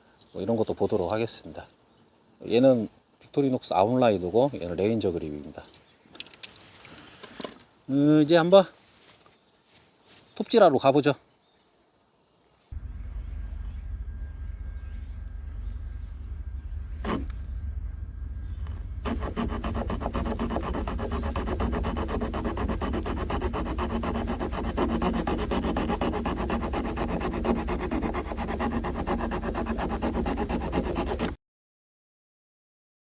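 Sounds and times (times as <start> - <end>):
hand saw rasping through wood: 17.0 - 17.4, 19.0 - 31.4.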